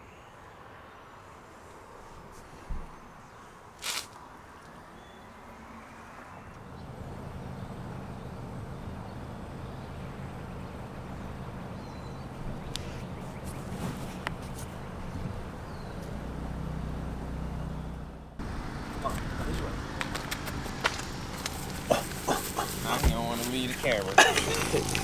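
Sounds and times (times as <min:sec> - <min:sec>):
vehicle engine humming: 0:06.6 - 0:25.0.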